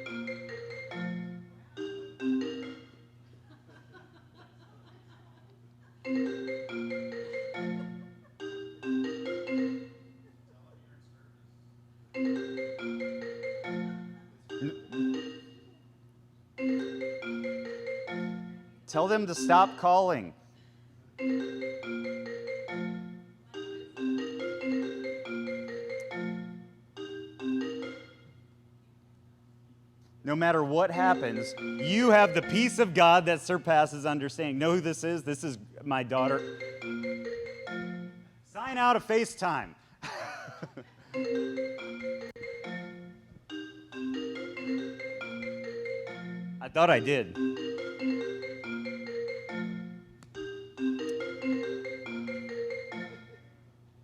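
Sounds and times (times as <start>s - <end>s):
marimba-like ringtone melody: 0.0s - 3.2s, 6.0s - 10.2s, 12.2s - 16.0s, 16.6s - 20.2s, 21.2s - 28.4s, 30.7s - 33.4s, 36.0s - 38.4s, 41.1s - 53.6s
steady low hum: 0.0s - 52.0s.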